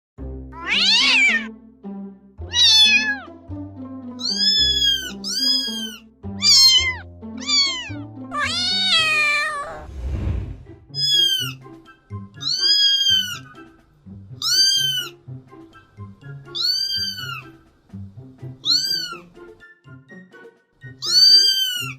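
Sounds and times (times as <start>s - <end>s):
background music with low notes: 0.2s - 21.9s
kitten meowing: 0.6s - 1.5s, 2.4s - 3.3s, 4.2s - 9.9s, 10.9s - 11.6s, 12.4s - 13.5s, 14.4s - 15.2s, 16.5s - 17.5s, 18.6s - 19.3s, 21.0s - 21.9s.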